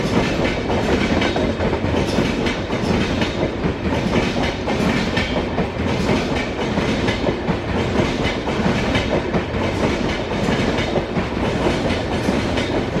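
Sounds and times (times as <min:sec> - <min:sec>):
train wheels clattering over joints: 0:00.0 - 0:13.0.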